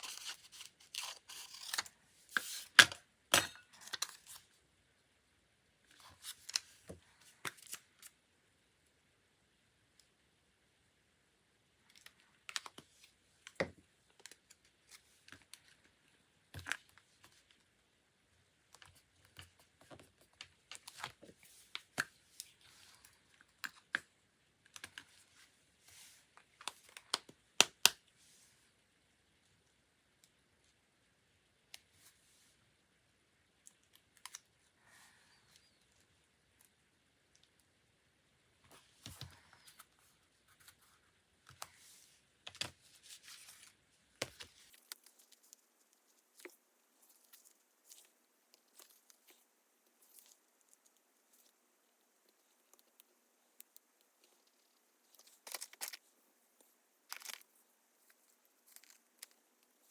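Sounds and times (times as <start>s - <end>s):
paper or tape tearing: 0.0s - 2.8s.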